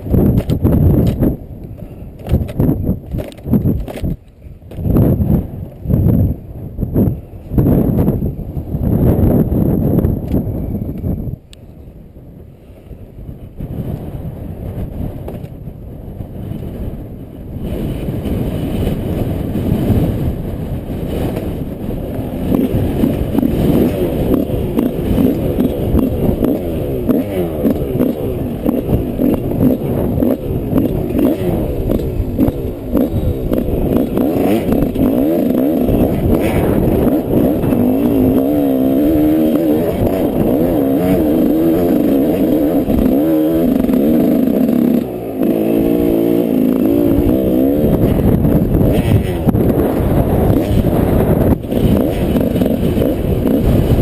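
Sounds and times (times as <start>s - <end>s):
motorcycle engine revving: 17.6s - 54.0s.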